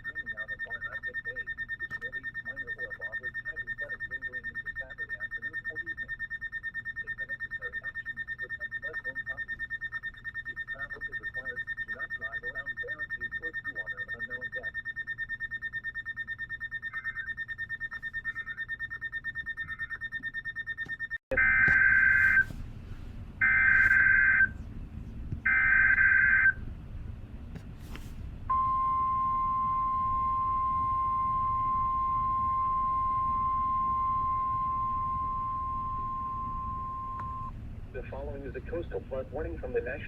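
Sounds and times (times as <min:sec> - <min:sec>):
fast-pulsing electronic beep: 0:00.0 - 0:22.5, 0:28.5 - 0:37.5
warbling data tones: 0:00.0 - 0:22.5, 0:23.4 - 0:24.6
steady warning alarm tone: 0:00.0 - 0:22.6, 0:23.4 - 0:26.8, 0:27.9 - 0:40.0.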